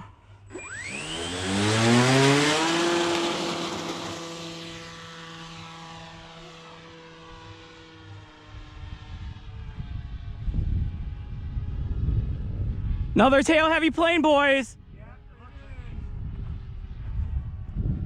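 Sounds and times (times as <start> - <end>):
electric propeller motor whining: 0.4 - 12.2.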